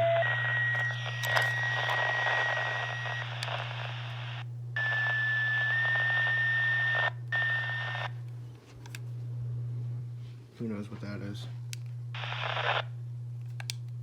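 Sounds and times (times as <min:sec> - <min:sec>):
radio static hiss: 0:00.0 - 0:08.1, 0:12.2 - 0:12.9
low hum: 0:00.0 - 0:14.0.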